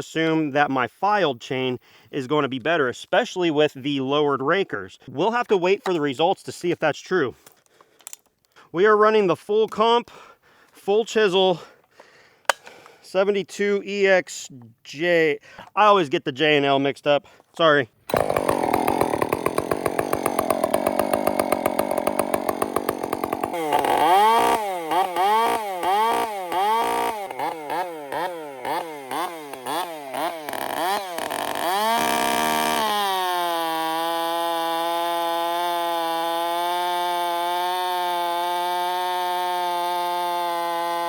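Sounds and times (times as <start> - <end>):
chainsaw cutting: 18.1 - 41.0.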